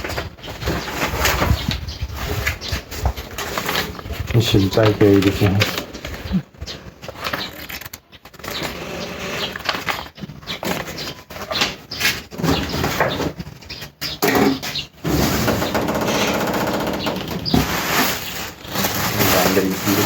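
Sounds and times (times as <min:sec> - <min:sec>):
packaging rustling and knocking: 0:09.4 - 0:20.0.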